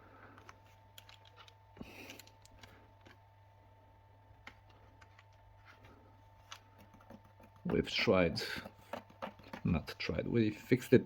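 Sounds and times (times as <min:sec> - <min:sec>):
low steady hum: 0:00.0 - 0:11.0
plastic parts clicking: 0:00.4 - 0:03.2.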